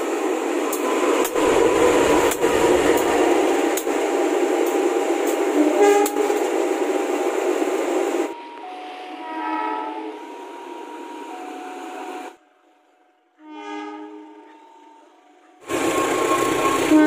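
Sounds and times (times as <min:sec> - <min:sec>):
passing train rumble: 0:00.0 - 0:17.0
locomotive air horn: 0:01.3 - 0:03.3, 0:05.5 - 0:06.5, 0:08.9 - 0:10.3, 0:13.3 - 0:14.6, 0:15.7 - 0:17.0.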